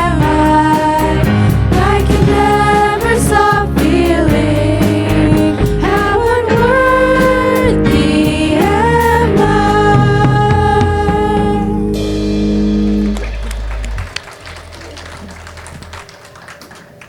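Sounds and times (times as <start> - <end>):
worship song with singing: 0.0 - 12.4.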